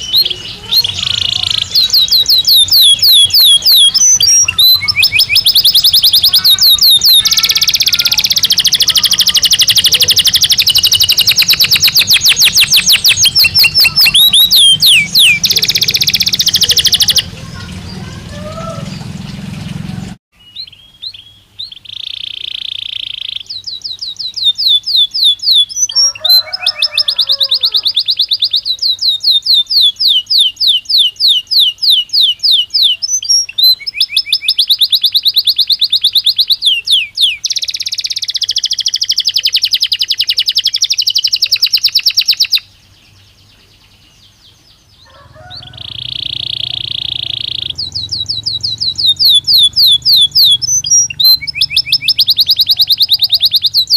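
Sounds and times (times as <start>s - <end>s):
canary singing trills: 0.0s - 53.9s.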